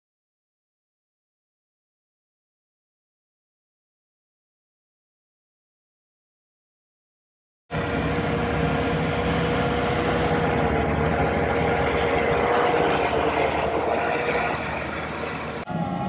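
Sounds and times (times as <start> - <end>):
grinding attachment whine: 7.7 - 16.0
track loader engine: 7.7 - 16.0.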